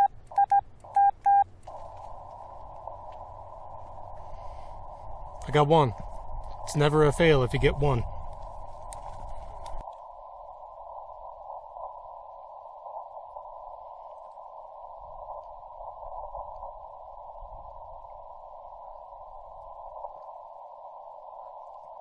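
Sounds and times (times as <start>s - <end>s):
radio receiver hiss: 0.0s - 22.0s
faint clicks: 8.2s - 10.1s.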